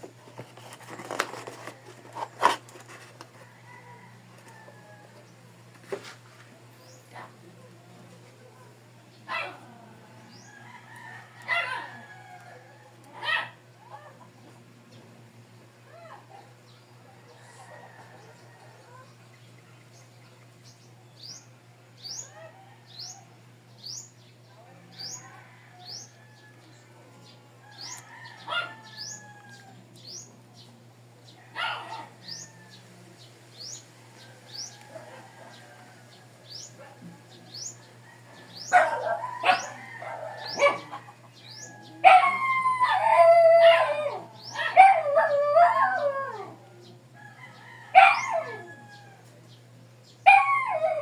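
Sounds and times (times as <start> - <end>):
faint chicken calls: 0.3 - 15.1, 16.0 - 20.7, 22.0 - 51.0
rooster crowing: 3.2 - 5.4, 9.8 - 13.2, 17.1 - 19.1, 22.3 - 23.4, 24.9 - 29.9, 31.3 - 33.0, 33.7 - 49.4.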